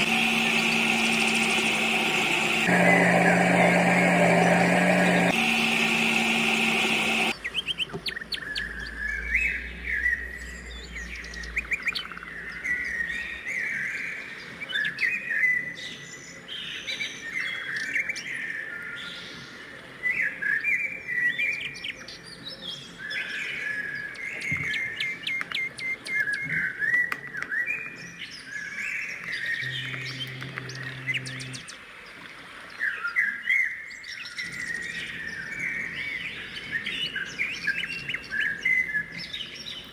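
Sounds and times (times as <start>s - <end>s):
loud motor: 0.0s - 7.4s, 29.6s - 31.6s.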